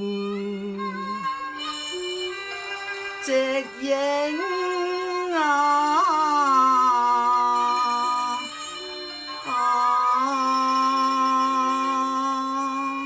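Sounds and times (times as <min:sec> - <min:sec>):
musical accompaniment: 0:00.0 - 0:13.0
opera singing long held notes: 0:03.2 - 0:13.0.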